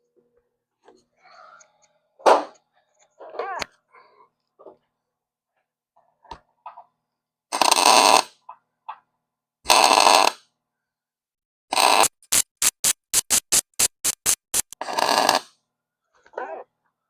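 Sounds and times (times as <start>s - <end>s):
welder arc crackling and buzzing: 12.0s - 14.8s.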